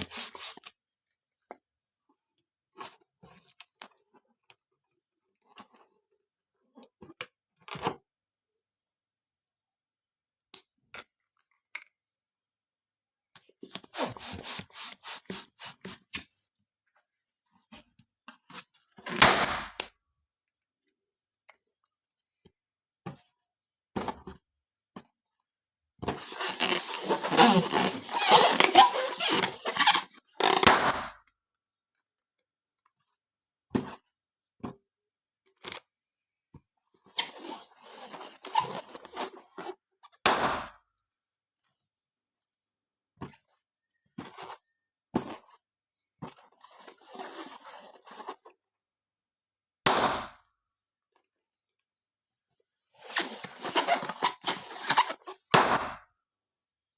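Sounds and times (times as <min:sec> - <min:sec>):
packaging rustling and rubbing: 0:00.0 - 0:00.7, 0:13.7 - 0:16.4, 0:26.1 - 0:30.7, 0:37.1 - 0:39.8, 0:46.4 - 0:48.5, 0:53.0 - 0:55.4.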